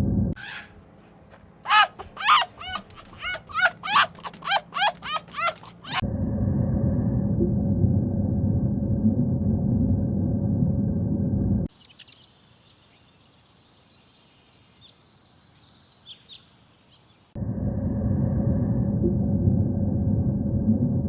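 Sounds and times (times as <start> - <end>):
loud low rumbling noise: 6.1 - 11.6.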